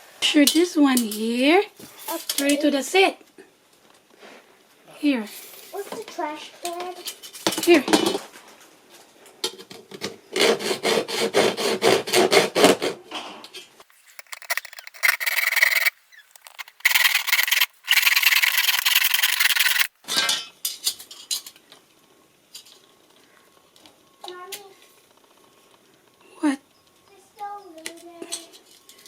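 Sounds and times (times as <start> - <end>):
hand tool rasping: 13.8 - 19.9.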